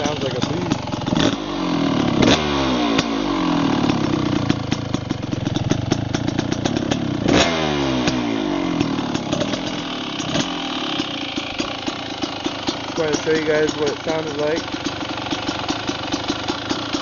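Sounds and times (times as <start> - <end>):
dirt bike engine idling with pops: 0.0 - 17.0.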